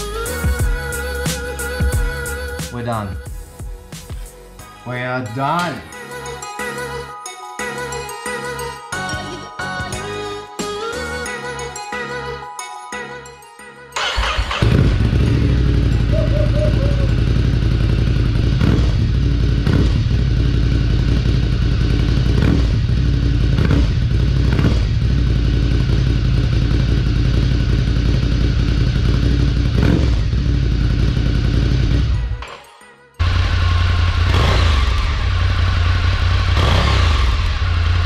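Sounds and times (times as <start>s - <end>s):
motorcycle engine idling: 14.0s - 32.3s, 33.2s - 38.0s.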